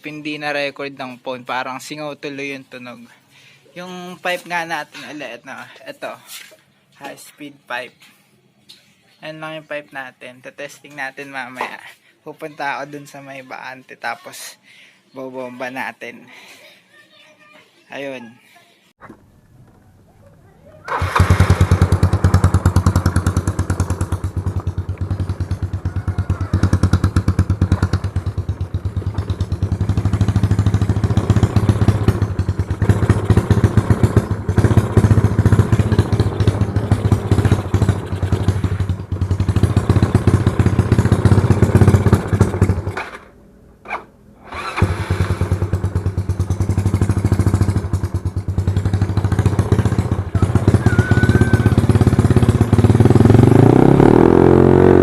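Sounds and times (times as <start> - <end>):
scooter engine revving: 20.8 - 55.0.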